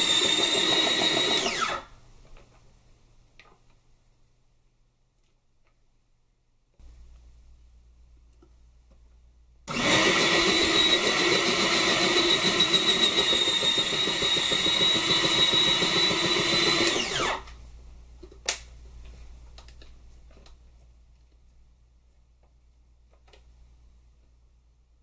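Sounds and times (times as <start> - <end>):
salad maker motor whining: 0.0 - 1.8, 9.7 - 17.4.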